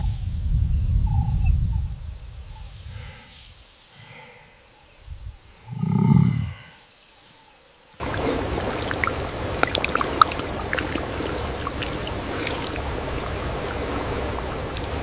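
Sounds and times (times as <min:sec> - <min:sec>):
running water: 0:08.0 - 0:15.0
water drips and splashes: 0:08.0 - 0:15.0.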